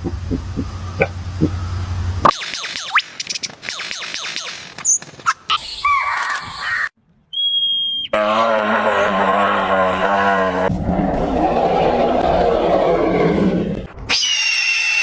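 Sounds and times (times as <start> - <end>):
whistle-like tone: 7.3 - 8.2.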